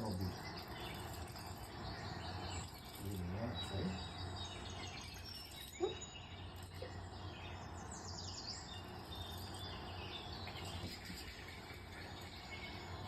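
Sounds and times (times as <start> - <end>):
insect-like trilling: 0.0 - 4.1
faint bird chirps: 0.0 - 13.0
steady low hum: 0.0 - 13.0.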